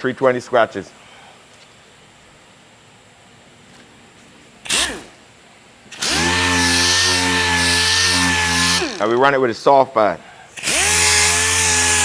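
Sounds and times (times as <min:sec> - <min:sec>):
orbital sander humming and hissing: 0:06.0 - 0:09.2, 0:10.6 - 0:12.0.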